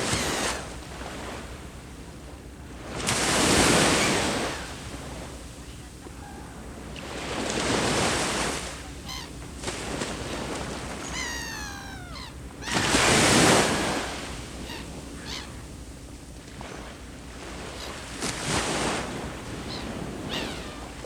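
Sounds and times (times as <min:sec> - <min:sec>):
bird call: 0:00.0 - 0:00.7, 0:11.0 - 0:14.0, 0:14.6 - 0:15.6, 0:19.6 - 0:21.0
sea waves breaking on shore: 0:00.0 - 0:21.0.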